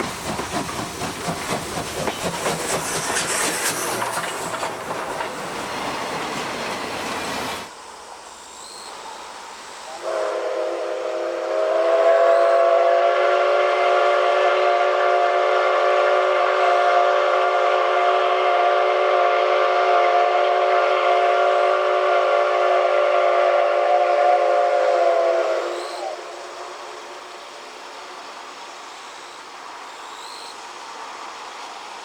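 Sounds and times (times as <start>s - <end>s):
steam locomotive whistle blast: 9.9s - 27.2s.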